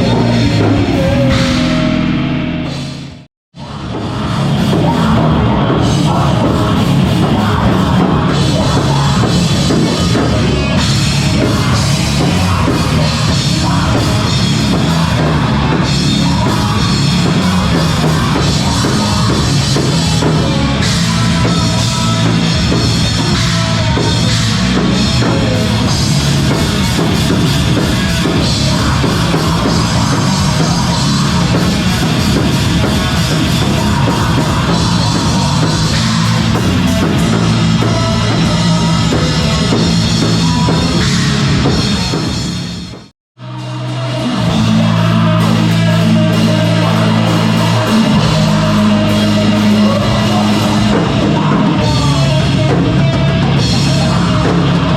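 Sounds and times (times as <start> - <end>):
drum kit: 0.0 - 54.9
rock band playing heavy metal: 0.0 - 54.9.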